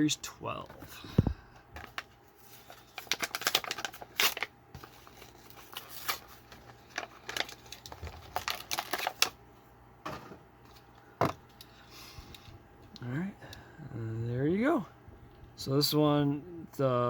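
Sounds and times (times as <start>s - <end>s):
plastic blister pack being torn open: 2.9s - 9.4s.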